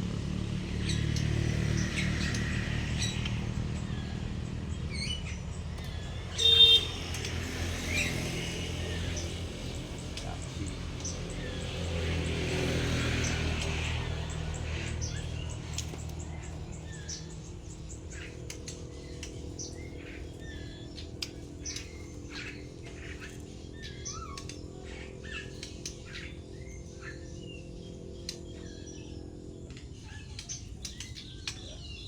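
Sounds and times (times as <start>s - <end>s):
steady low hum: 0.0s - 32.0s
songbird chirping and whistling: 5.9s - 7.2s.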